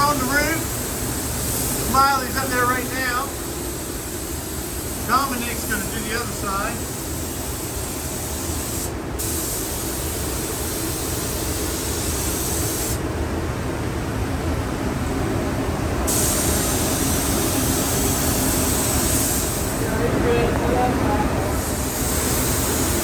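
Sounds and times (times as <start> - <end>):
air spray gun hissing: 0.0 - 13.0, 16.0 - 19.8, 21.5 - 23.0.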